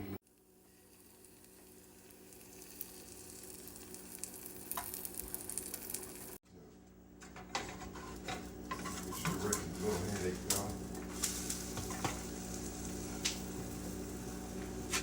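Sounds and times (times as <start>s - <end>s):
batter sizzling in a frying pan: 0.2s - 6.4s, 9.7s - 15.0s.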